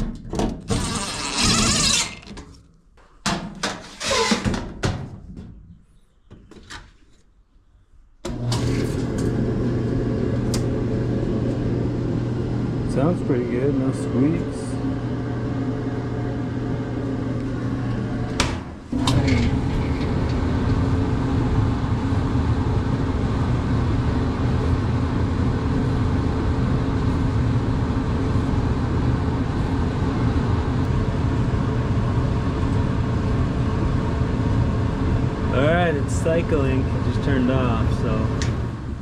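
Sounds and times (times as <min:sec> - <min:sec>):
dryer motor and drum hum: 0:08.3 - 0:39.0.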